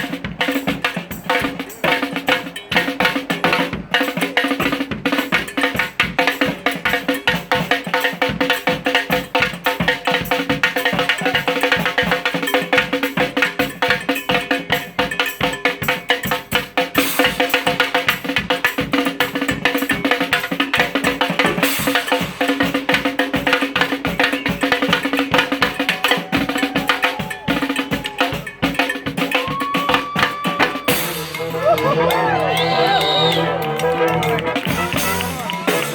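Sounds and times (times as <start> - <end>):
busy drum beat: 0.0 - 35.9
brass band playing: 25.2 - 35.9.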